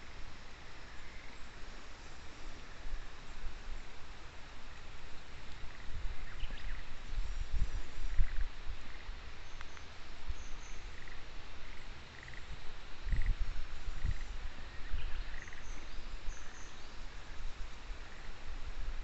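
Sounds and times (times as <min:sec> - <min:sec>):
steady hiss: 0:00.0 - 0:19.0
frogs croaking in chorus: 0:05.5 - 0:07.0, 0:08.0 - 0:09.7, 0:10.4 - 0:18.4.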